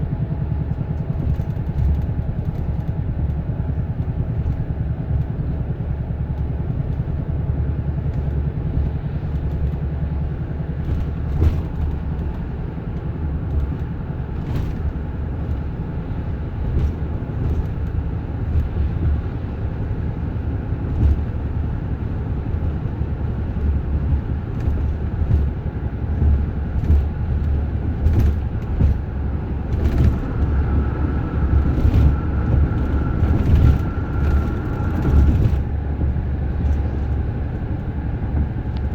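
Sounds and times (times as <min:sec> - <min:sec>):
loud low car drone: 0:10.4 - 0:38.9.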